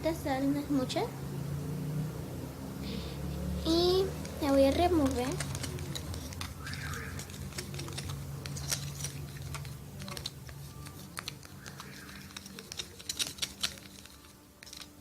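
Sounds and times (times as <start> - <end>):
utensil clicking against a bowl: 4.1 - 15.0.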